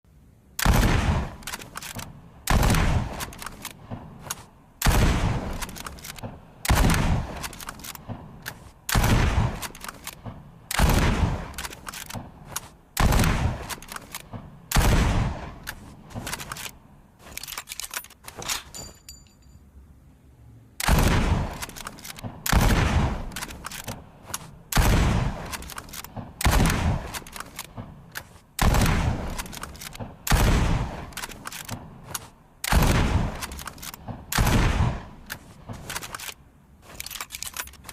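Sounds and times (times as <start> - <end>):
rifle shots: 0.6 - 18.6, 20.8 - 36.4
rifle bolt clicks and rattles: 1.4 - 2.2, 3.1 - 4.5, 5.5 - 10.9, 11.5 - 14.8, 15.6 - 19.6, 21.5 - 30.4, 31.0 - 34.5, 35.2 - 37.9.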